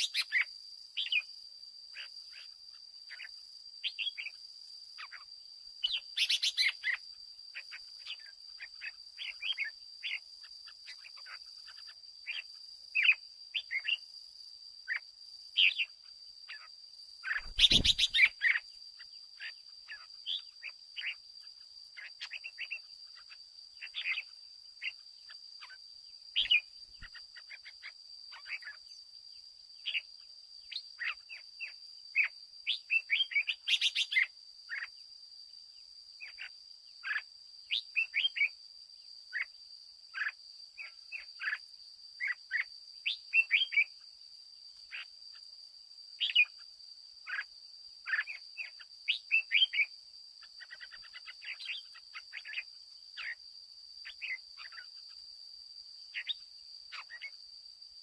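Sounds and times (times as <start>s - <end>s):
bird chirping and singing: 17.2s - 18.6s.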